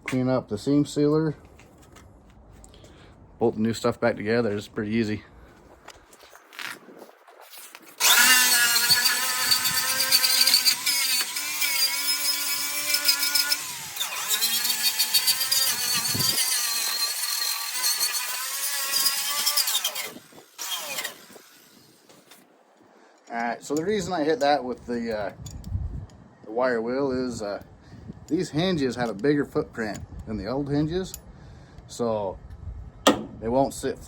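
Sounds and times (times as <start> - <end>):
wire wheel scraping sheet metal: 8.0 - 21.4.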